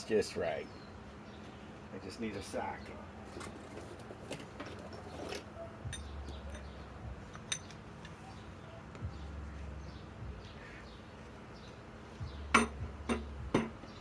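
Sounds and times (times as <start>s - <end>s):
metallic clicks of tools handled: 3.4s - 8.2s.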